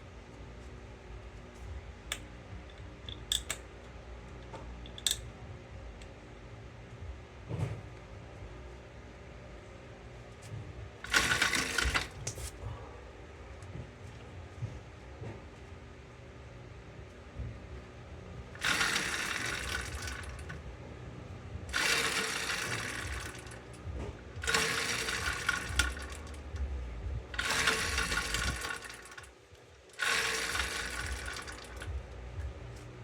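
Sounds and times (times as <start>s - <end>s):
engine cranking without firing: 11.0s - 12.5s, 18.6s - 20.6s, 21.7s - 29.3s, 29.9s - 32.9s.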